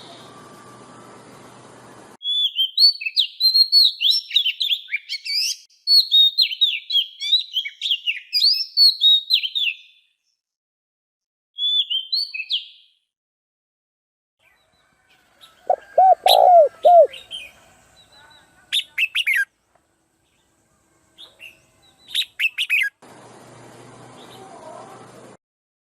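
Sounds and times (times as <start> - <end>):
high bird chirps: 2.2 - 10.1, 11.6 - 12.9, 15.7 - 18.2.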